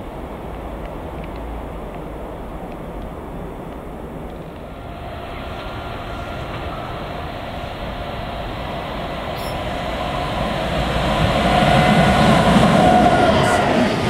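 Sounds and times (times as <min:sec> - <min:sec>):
train rumbling on rails: 0:00.0 - 0:14.0
wheels squealing: 0:04.7 - 0:14.0.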